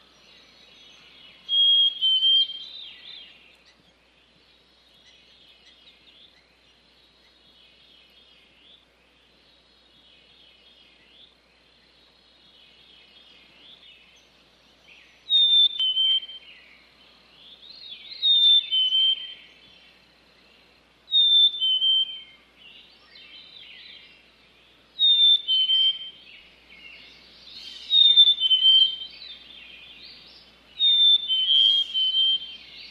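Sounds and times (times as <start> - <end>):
faint chorus of bird chirps: 0.0 - 32.9
bird whistling loud phrase: 30.8 - 32.6.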